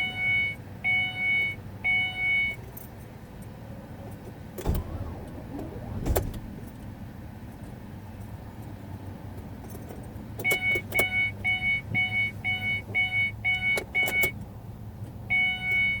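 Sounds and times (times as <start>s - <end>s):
low steady hum: 4.6s - 8.2s.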